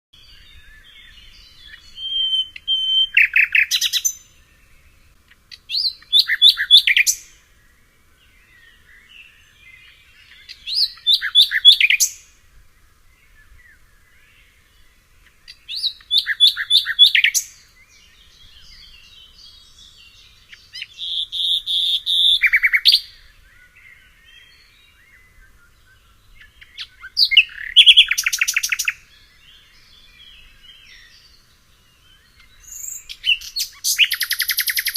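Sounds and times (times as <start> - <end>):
faint chirps of other birds: 0.2 - 34.9
songbird singing repeated phrase: 0.2 - 34.9.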